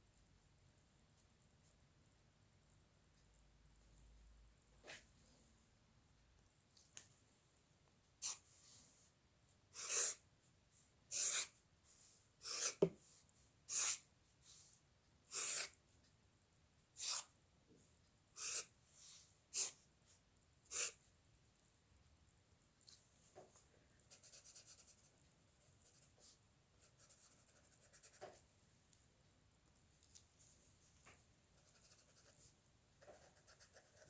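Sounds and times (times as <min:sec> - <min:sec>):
pen scratching on a surface: 0:09.8 - 0:10.2, 0:11.1 - 0:11.6, 0:12.4 - 0:13.0, 0:15.3 - 0:15.8, 0:17.0 - 0:17.3, 0:18.4 - 0:18.7, 0:20.7 - 0:21.0, 0:24.1 - 0:25.1, 0:26.9 - 0:28.4, 0:31.6 - 0:34.0.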